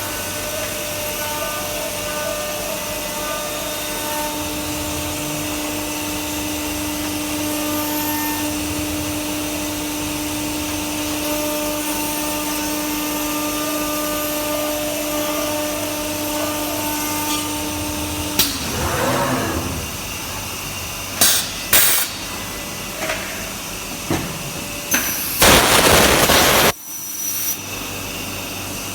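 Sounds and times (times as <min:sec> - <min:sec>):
loud hiss: 0:24.9 - 0:26.8.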